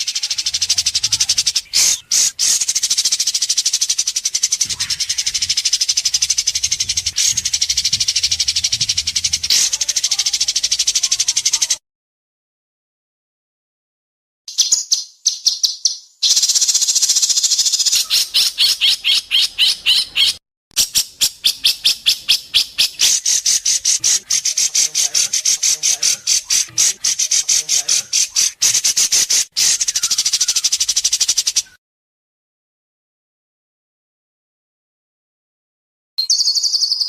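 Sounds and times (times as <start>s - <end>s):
bird singing staccato song: 0.0s - 11.8s, 14.5s - 31.8s.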